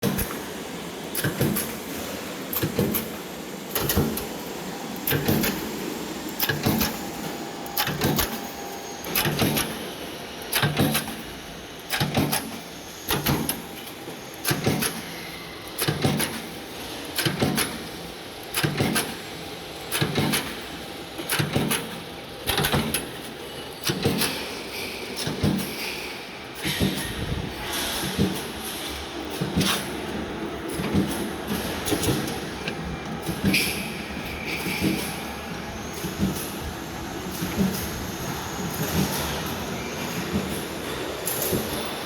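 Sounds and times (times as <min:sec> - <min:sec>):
machine running noise: 0:00.0 - 0:42.0.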